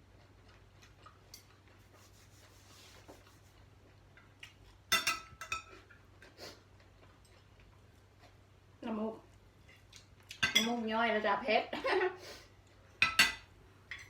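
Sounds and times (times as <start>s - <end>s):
cutlery scraping and clicking: 4.9s - 5.8s, 13.0s - 14.0s
dishes clattering with ringing clink: 4.9s - 5.8s, 10.4s - 10.8s, 13.0s - 14.0s.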